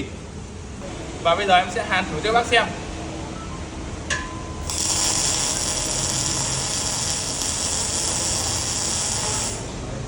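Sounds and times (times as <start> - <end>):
welder crackling hiss: 4.6 - 9.8.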